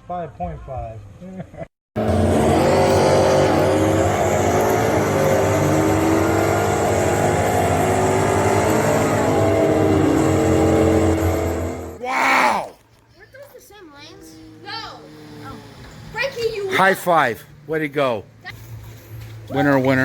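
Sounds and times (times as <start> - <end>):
race car engine drone: 2.0 - 12.0
person shouting: 12.0 - 12.8.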